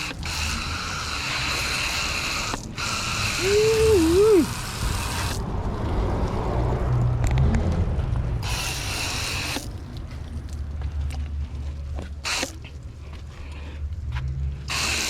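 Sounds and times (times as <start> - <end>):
hose water spraying: 0.0 - 6.4, 8.4 - 10.4, 12.2 - 12.7, 14.7 - 15.0.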